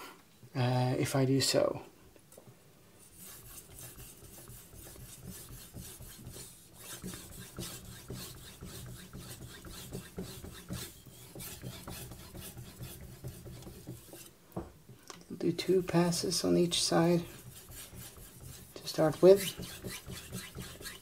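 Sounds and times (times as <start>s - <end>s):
knife scraping on whetstone: 3.1s - 14.3s, 17.1s - 21.0s.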